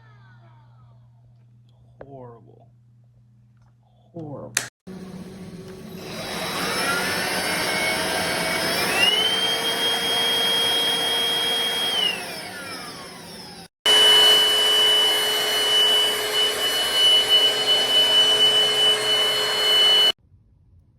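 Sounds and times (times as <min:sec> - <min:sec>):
stick vacuum motor whining: 0:04.9 - 0:20.2.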